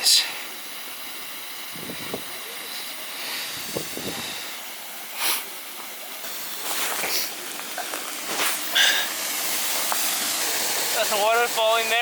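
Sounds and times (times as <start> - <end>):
water rushing under ice: 6.5 - 12.0.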